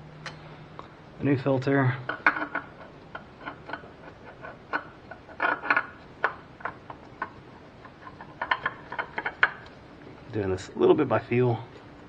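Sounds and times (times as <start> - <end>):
oil filter clicks and scrapes: 2.1 - 9.8.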